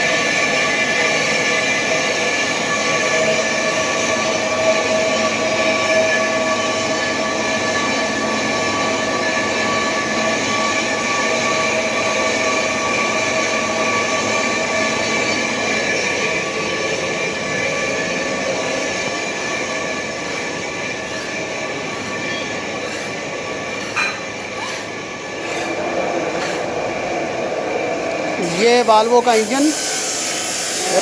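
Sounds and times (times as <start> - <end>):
lathe cutting metal: 0.0 - 31.0
tool squealing on metal: 17.8 - 26.6, 28.4 - 31.0.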